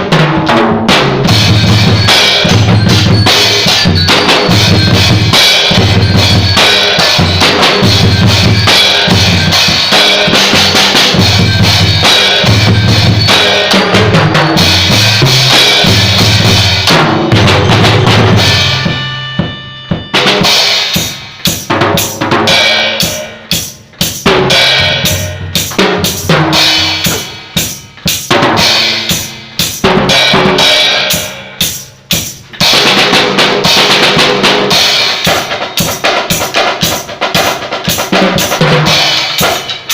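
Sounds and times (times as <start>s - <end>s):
drums: 0.0s - 39.9s
band playing: 1.2s - 30.6s.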